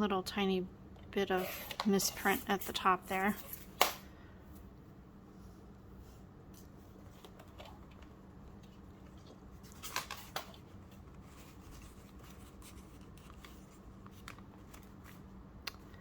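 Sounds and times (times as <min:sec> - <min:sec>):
paper rustling: 0:06.6 - 0:15.3.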